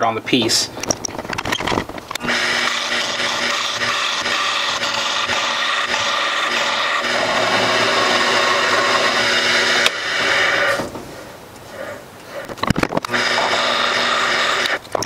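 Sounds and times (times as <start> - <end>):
lathe motor hum: 2.1 - 14.8
cutting tool scraping wood: 2.2 - 10.9, 11.7 - 15.0.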